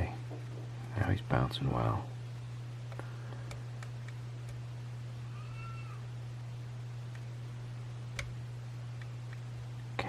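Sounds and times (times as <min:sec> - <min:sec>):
steady low hum: 0:00.0 - 0:10.0
cat meowing faintly: 0:05.2 - 0:06.1.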